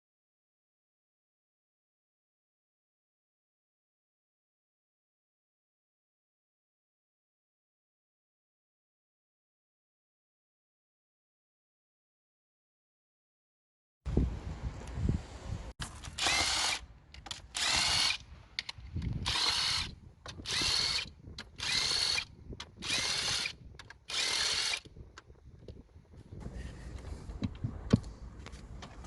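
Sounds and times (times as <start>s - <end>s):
power tool motor whining: 16.0s - 24.9s.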